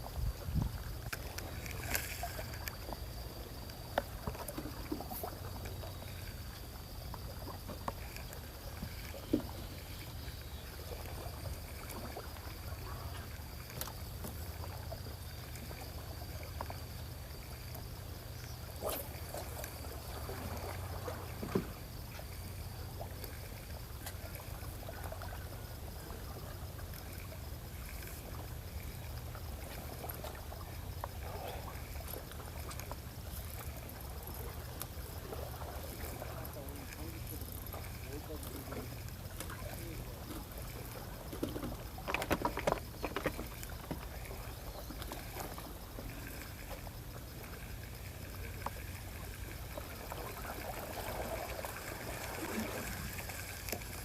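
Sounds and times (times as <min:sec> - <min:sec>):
water lapping: 0:00.0 - 0:54.0.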